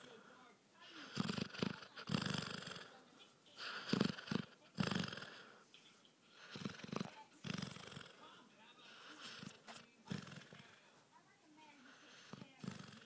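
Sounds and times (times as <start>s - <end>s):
dog snoring and snorting: 1.0s - 3.0s, 3.6s - 5.6s, 6.4s - 8.3s, 8.9s - 10.8s, 12.0s - 13.0s.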